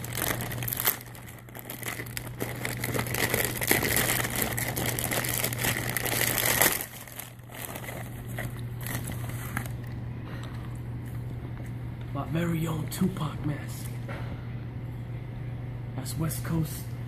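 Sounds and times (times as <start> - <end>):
packaging crinkling and rustling: 0.0 - 10.0.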